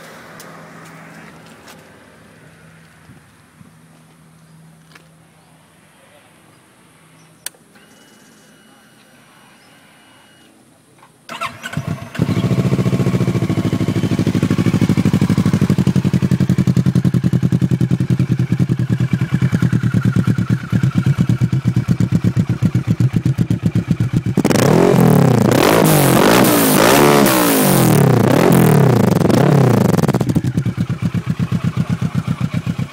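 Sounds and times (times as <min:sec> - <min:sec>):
motorcycle starter cranking: 0:11.3 - 0:12.9
motorcycle engine revving: 0:11.3 - 0:32.9
motorcycle engine idling: 0:11.4 - 0:25.3, 0:28.7 - 0:32.9.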